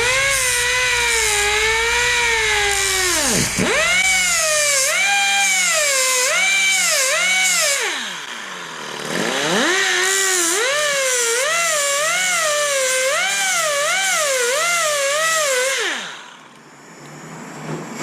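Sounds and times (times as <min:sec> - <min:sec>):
cutoff tool cutting metal: 0:00.0 - 0:05.0.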